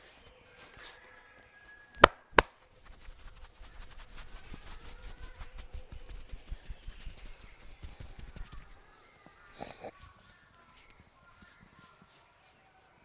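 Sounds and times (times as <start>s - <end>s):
hands rubbing and patting head: 2.0s - 8.9s.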